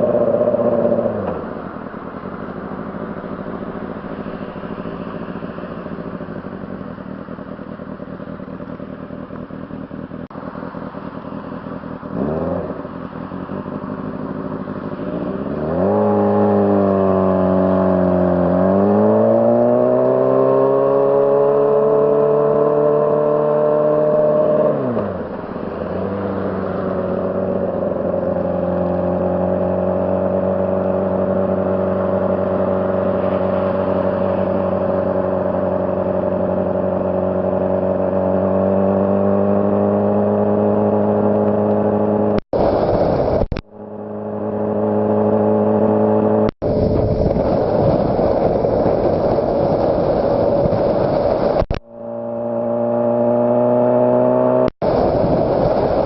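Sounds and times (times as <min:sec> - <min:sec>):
motorcycle engine revving: 0:00.0 - 0:56.0
rushing noise: 0:42.5 - 0:43.7, 0:46.6 - 0:53.2, 0:54.8 - 0:56.0.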